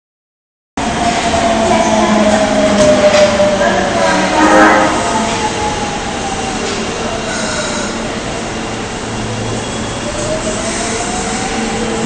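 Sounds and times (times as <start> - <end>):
wheels rumbling on rail: 0.8 - 12.0.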